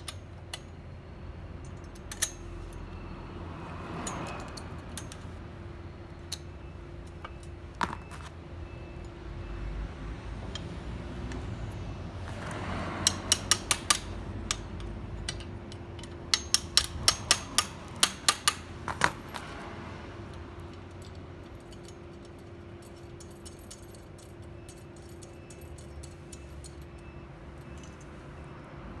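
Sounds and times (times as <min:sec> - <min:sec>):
jack mechanism metallic clicks: 0:01.6 - 0:03.1, 0:03.8 - 0:05.4, 0:10.5 - 0:19.7, 0:20.3 - 0:28.1.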